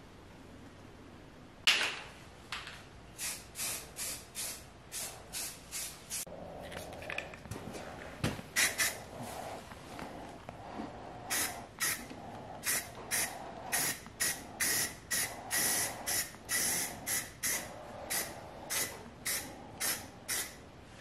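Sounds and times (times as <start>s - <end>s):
aerosol spray hissing: 3.2s - 6.3s, 8.6s - 9.4s, 11.3s - 20.6s.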